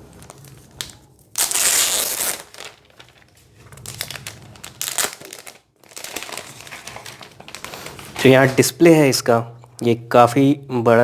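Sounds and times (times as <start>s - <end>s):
packaging crinkling and rustling: 0.0s - 8.7s.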